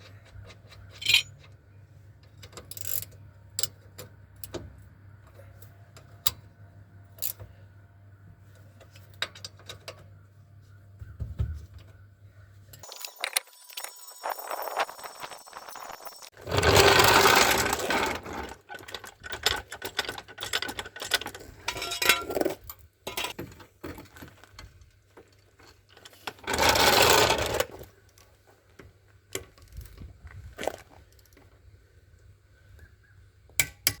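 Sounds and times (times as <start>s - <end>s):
tools clicking and knocking: 0.0s - 1.6s, 18.4s - 23.6s, 33.6s - 34.0s.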